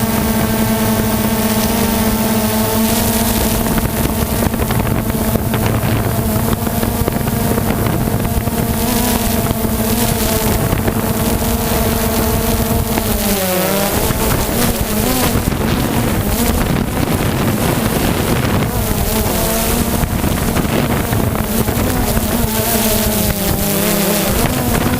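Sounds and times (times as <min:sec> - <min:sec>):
aircraft engine running: 0:00.0 - 0:24.9
wind on microphone: 0:00.0 - 0:24.9.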